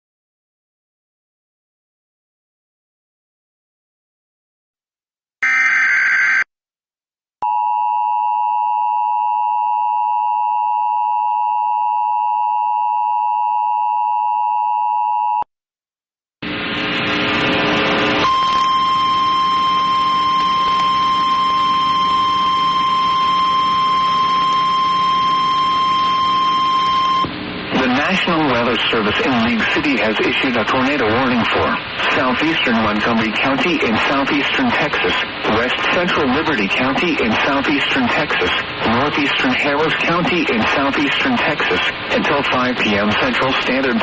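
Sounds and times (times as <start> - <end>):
single-tone warning alarm: 5.4 - 6.5, 18.2 - 27.3
two-tone attention signal: 5.4 - 6.5, 18.2 - 27.3
radio static: 16.4 - 21.0, 26.9 - 44.0.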